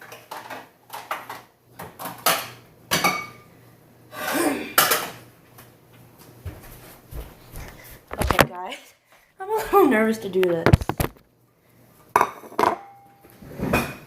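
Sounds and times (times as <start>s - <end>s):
dishes clattering and clinking: 0.0s - 3.5s, 4.3s - 5.2s, 12.1s - 14.0s.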